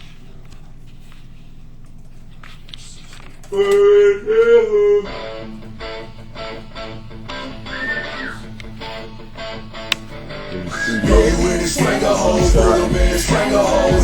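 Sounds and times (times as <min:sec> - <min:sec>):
guitar-led backing track: 0:05.0 - 0:14.0
held melodic phrase: 0:10.6 - 0:14.0.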